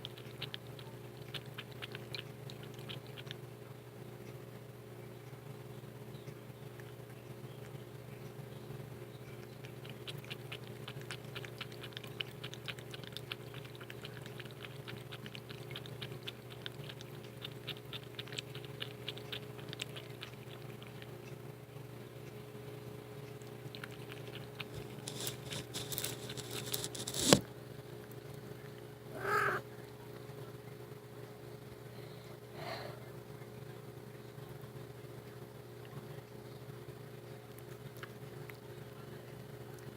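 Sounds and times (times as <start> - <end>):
cat mouth clicks while eating: 0.0 - 3.5, 9.3 - 21.4, 23.2 - 27.4
cat short call: 29.1 - 29.6.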